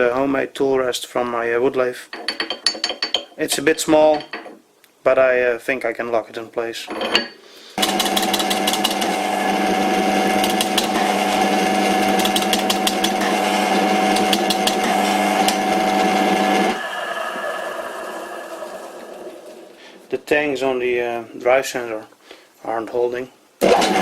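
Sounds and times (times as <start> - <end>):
lathe machine hum: 7.8 - 20.2.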